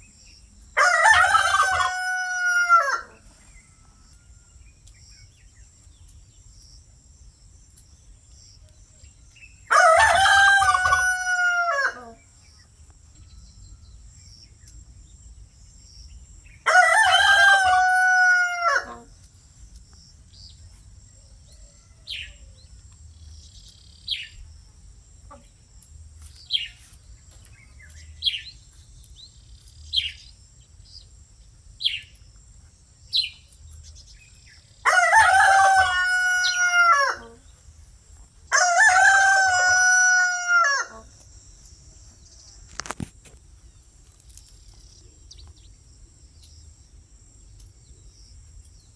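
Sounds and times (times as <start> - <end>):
insect drone: 0.0 - 48.9
rooster crowing: 0.8 - 3.2, 9.7 - 12.2, 16.6 - 19.1, 34.8 - 37.4, 38.5 - 41.1
small bird chirping: 19.0 - 34.8, 43.6 - 48.9.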